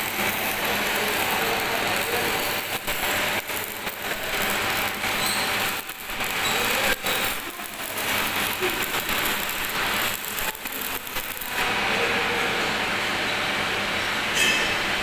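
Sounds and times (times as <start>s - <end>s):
arc welding hiss: 0.0s - 11.7s.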